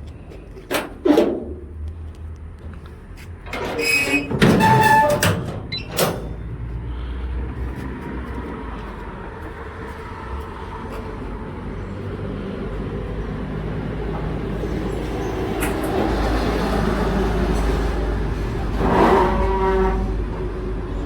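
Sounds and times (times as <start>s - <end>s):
vehicle engine rumbling: 0.0s - 21.0s.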